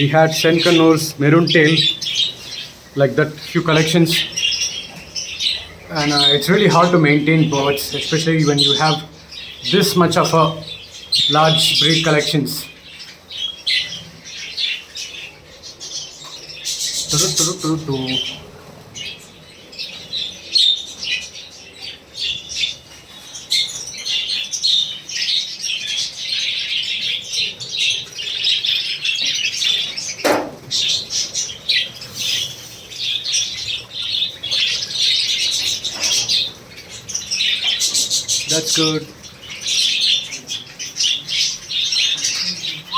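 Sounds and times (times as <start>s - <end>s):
birds chirping and squawking: 0.0s - 42.9s
wings fluttering: 30.2s - 31.4s.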